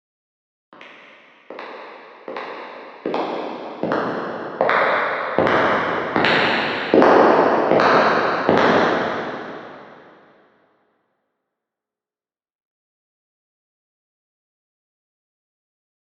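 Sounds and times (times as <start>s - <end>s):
echoing footsteps: 0.8s - 10.2s.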